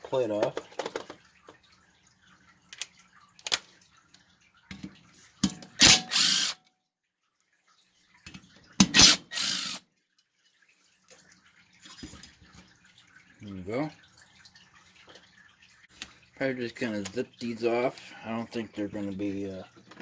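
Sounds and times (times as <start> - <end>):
power ratchet running: 5.8 - 6.6, 8.9 - 9.8.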